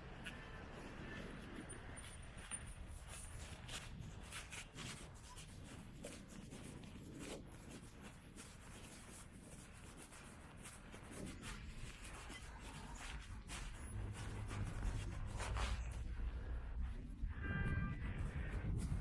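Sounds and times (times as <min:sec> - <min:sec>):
faint low rumble: 0:05.2 - 0:19.0.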